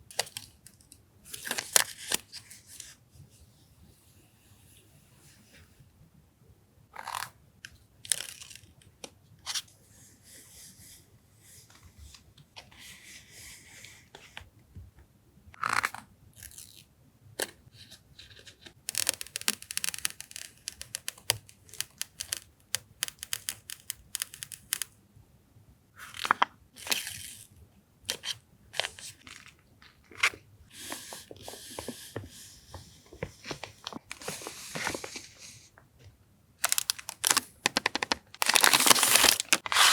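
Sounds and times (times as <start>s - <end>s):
packaging crinkling and rustling: 33.2s - 35.4s, 36.6s - 39.9s.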